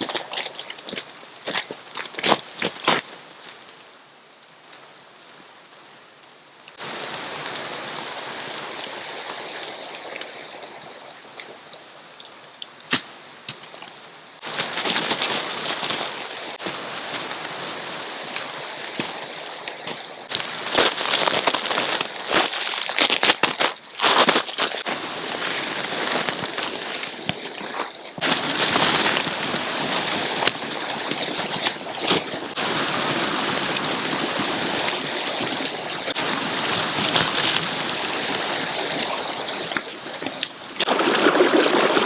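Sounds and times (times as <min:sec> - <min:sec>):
creek water rushing: 0:06.8 - 0:11.4, 0:14.3 - 0:42.0.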